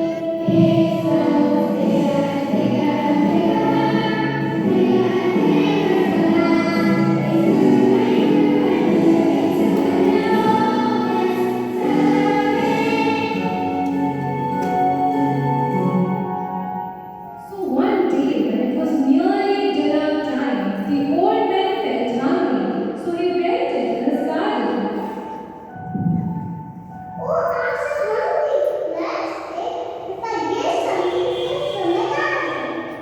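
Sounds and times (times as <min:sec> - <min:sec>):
choir singing: 0:00.0 - 0:16.2
music: 0:00.0 - 0:33.0.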